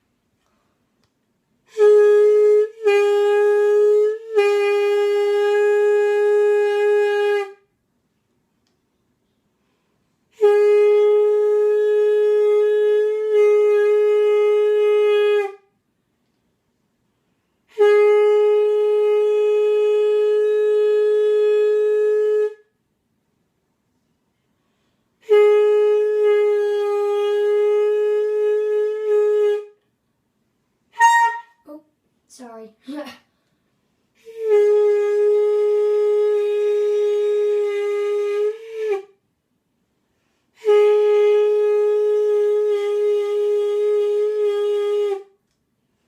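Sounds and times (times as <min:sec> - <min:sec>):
wind instrument long notes: 0:01.7 - 0:07.6, 0:10.3 - 0:15.7, 0:17.7 - 0:22.7, 0:25.2 - 0:29.8, 0:30.9 - 0:31.7, 0:34.2 - 0:39.2, 0:40.6 - 0:45.3.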